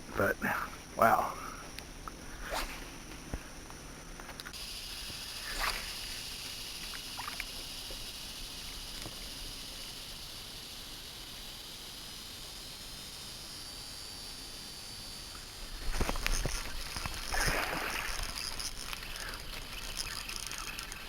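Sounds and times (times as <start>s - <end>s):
steady high hiss: 0.0s - 21.0s
small sharp knocks or splashes: 16.0s - 19.0s
water sloshing against hull: 16.1s - 19.3s.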